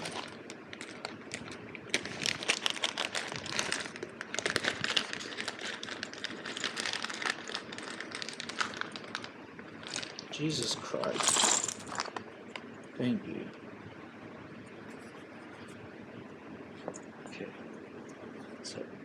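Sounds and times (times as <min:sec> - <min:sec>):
plastic packaging crinkling: 0:00.0 - 0:10.3.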